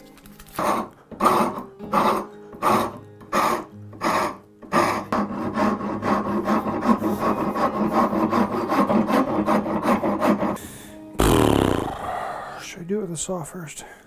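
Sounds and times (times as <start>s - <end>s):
rasp scraping hardwood: 0.6s - 10.6s.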